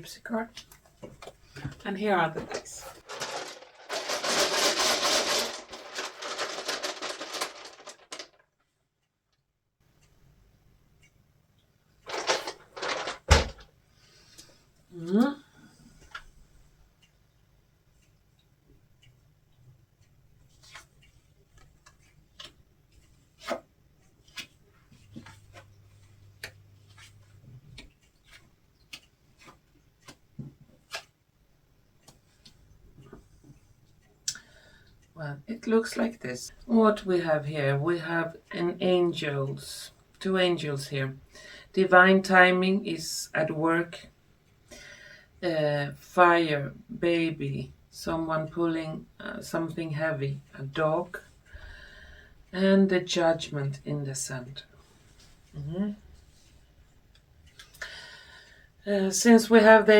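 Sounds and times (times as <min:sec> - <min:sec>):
dice rattling: 0:03.0 - 0:08.4, 0:12.1 - 0:13.6.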